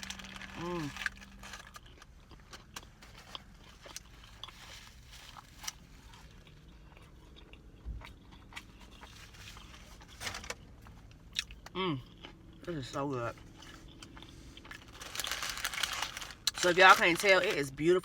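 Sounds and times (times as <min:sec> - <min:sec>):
small food crunches: 0:00.0 - 0:10.1, 0:11.2 - 0:17.5
wet chewing mouth sounds: 0:05.9 - 0:09.8, 0:10.8 - 0:14.9.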